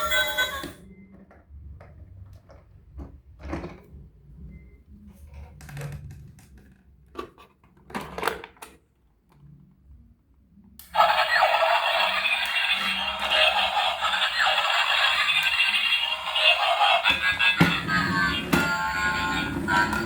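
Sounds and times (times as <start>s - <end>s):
tune playing: 17.6s - 20.0s.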